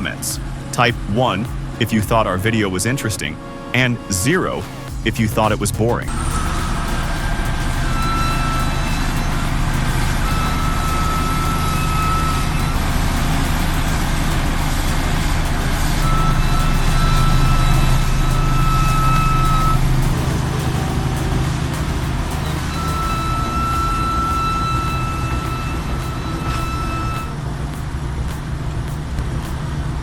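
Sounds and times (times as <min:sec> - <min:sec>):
long high-pitched tones: 0:06.1 - 0:29.1
heavy diesel engine running: 0:06.1 - 0:30.0.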